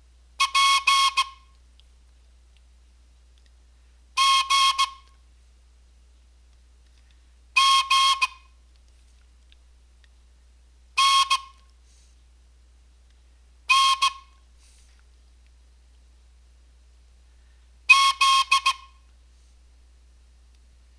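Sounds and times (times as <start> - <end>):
whistle sounding morse code: 0.4 - 1.4, 4.2 - 5.1, 7.6 - 8.5, 11.0 - 11.6, 13.7 - 14.3, 17.9 - 19.0.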